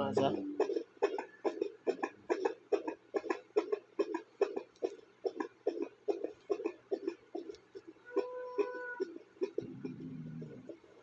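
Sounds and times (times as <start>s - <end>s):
whooshing fetal heartbeat pulses: 0.0s - 11.0s.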